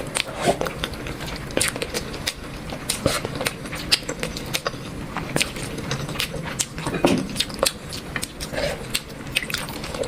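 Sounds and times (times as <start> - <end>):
person chewing and smacking: 0.0 - 10.0.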